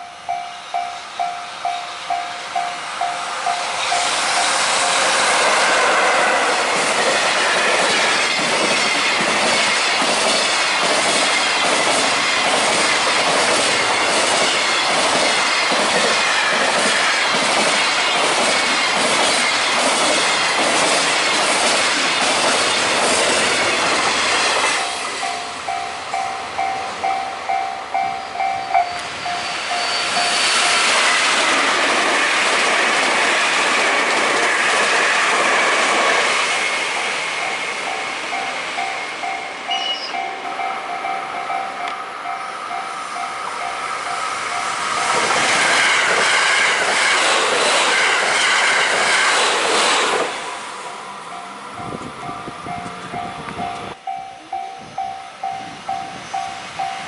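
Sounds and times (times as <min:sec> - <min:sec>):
crossing bell ringing: 0:00.0 - 0:05.9, 0:22.2 - 0:31.2, 0:37.3 - 0:45.3, 0:50.8 - 0:57.0
trains passing at speed: 0:00.0 - 0:57.0.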